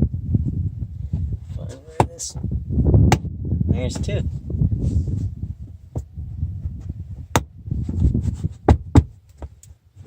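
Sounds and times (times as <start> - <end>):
low rumbling handling noise: 0.0 - 9.8.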